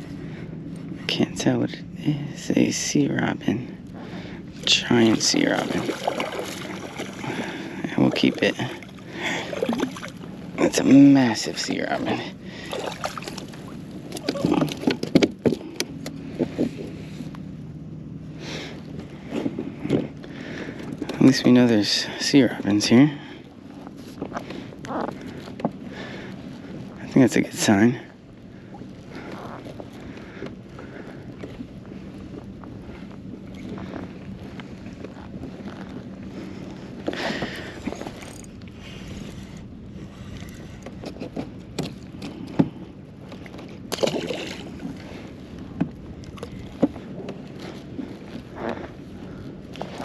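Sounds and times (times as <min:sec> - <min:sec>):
steady low hum: 0:00.0 - 0:50.0
water moving around kayak: 0:03.8 - 0:50.0
knocks and clicks from handling fish: 0:14.1 - 0:16.6, 0:40.8 - 0:44.6.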